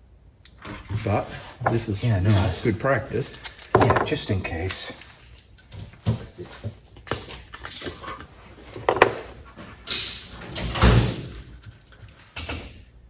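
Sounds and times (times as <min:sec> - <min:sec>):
rustling and scraping on workbench: 0:06.0 - 0:10.6.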